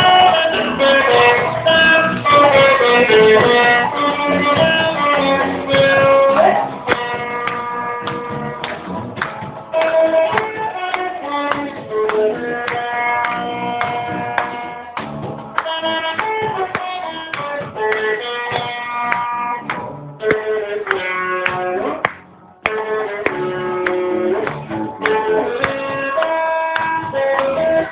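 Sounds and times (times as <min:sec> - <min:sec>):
beat: 0:00.0 - 0:27.9
held melody notes: 0:00.0 - 0:27.9
plucked string notes: 0:00.0 - 0:27.9.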